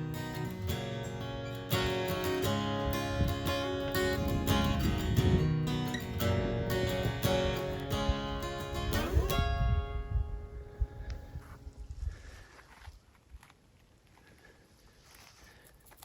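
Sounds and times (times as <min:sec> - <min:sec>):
strummed acoustic guitar: 0:00.0 - 0:11.4.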